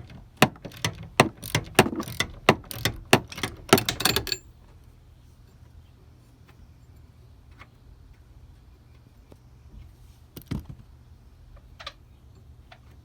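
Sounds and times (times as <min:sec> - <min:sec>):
ratchet clicking: 0:00.0 - 0:04.4.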